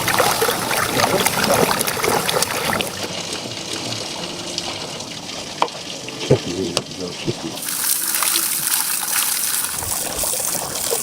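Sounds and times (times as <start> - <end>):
water trickling and splashing: 0.0 - 11.0.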